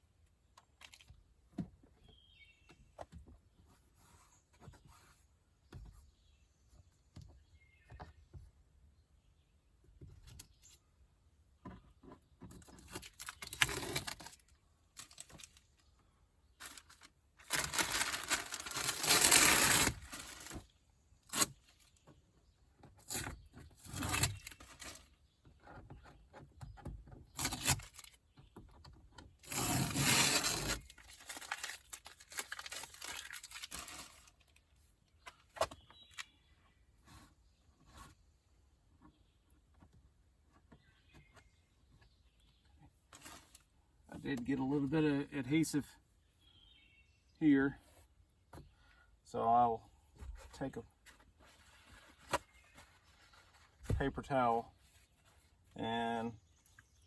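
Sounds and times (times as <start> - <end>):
paper and tape tearing: 12.9 - 15.6, 16.6 - 20.6, 21.3 - 21.6, 23.0 - 25.0, 27.4 - 28.2, 29.4 - 34.3.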